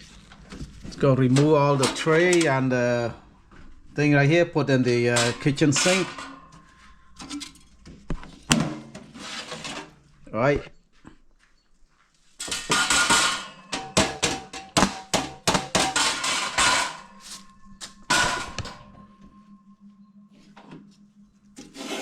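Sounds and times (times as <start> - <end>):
metal trays clattering: 0.5 - 3.2, 4.9 - 7.7, 8.3 - 10.1, 12.4 - 19.0
ringing metal clang: 1.1 - 9.2, 12.4 - 21.8.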